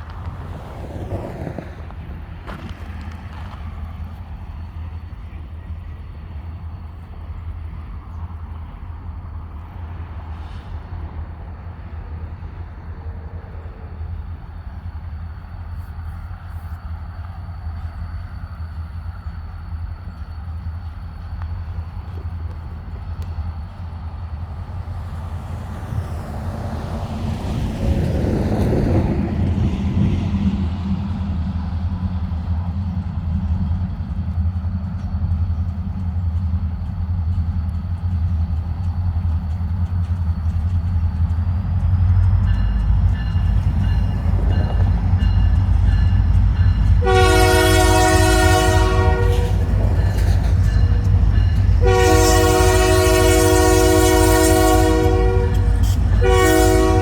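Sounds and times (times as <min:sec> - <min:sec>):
diesel locomotive rumble: 0:00.0 - 0:57.0
locomotive air horn blasts: 0:46.9 - 0:49.8, 0:51.7 - 0:57.0.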